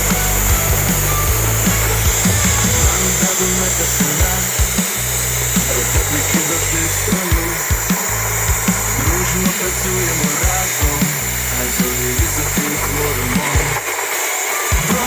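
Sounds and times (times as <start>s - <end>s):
music with steady beat: 0.0s - 15.0s.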